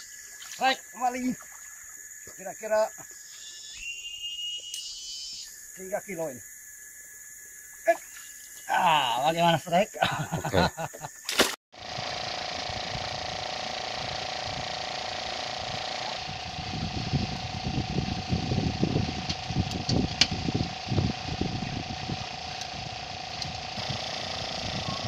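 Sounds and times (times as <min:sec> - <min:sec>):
fishing reel whirring: 0:11.8 - 0:25.0.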